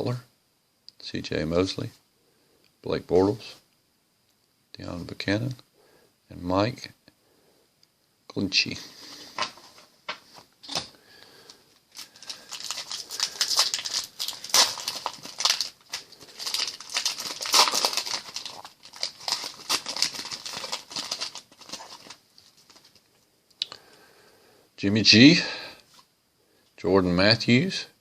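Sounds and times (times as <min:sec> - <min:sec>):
foil wrapper tearing and crinkling: 0:11.9 - 0:23.0.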